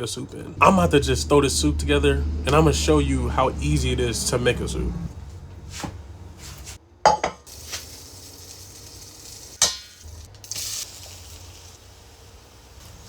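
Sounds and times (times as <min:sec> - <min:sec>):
metal cookware clattering: 0:07.1 - 0:07.5.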